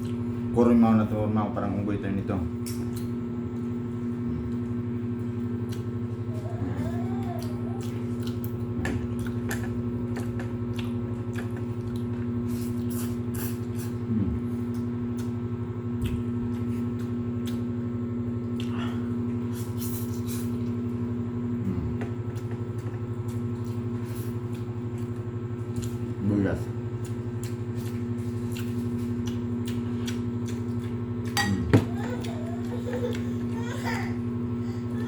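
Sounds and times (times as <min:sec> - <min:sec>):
low mechanical hum: 0:00.0 - 0:35.0
eating clicks and smacks: 0:02.6 - 0:03.7, 0:05.6 - 0:06.0, 0:07.3 - 0:13.2, 0:14.7 - 0:17.8, 0:26.9 - 0:31.5.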